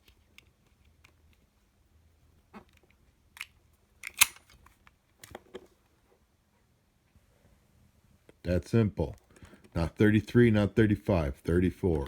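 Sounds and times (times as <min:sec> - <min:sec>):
padlock dial clicks: 0:04.0 - 0:04.5
sharp lock click: 0:04.0 - 0:04.5.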